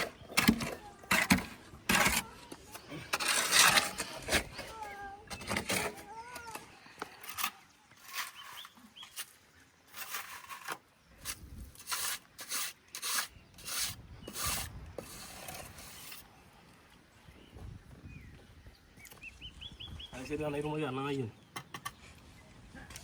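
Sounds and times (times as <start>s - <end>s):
rough scraping strokes: 0.0s - 6.1s, 7.0s - 16.3s.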